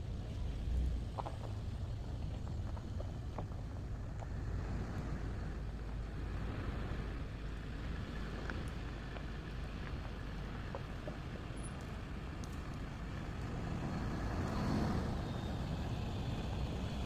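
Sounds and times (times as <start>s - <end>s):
car driving rumble: 0.0s - 17.0s
faint clicks: 9.8s - 13.5s.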